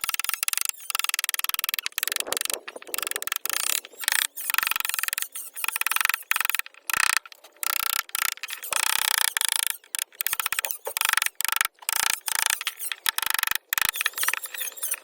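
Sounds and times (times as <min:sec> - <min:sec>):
hand tool scraping wood: 0:08.4 - 0:15.0.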